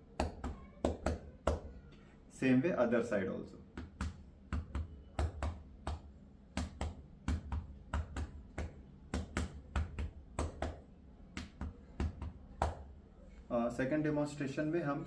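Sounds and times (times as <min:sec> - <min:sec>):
cupped hand clapping on back: 0:00.2 - 0:01.7, 0:03.8 - 0:12.9.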